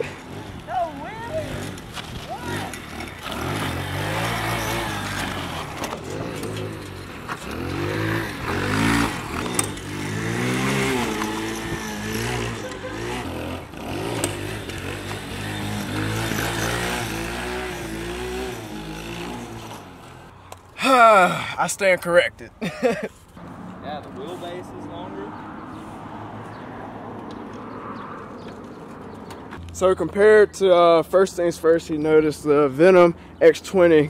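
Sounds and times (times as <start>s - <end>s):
motorcycle engine revving: 0.0s - 20.3s.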